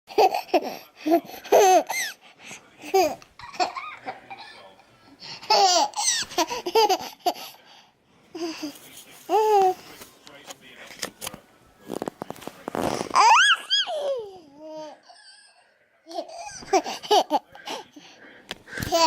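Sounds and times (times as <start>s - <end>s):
toddler laughing and squealing: 13.2s - 14.4s.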